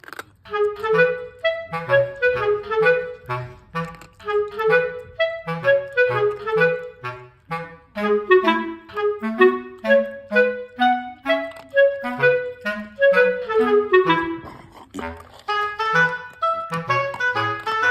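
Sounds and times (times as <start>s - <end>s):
bouncy woodwind melody: 0.4s - 17.9s.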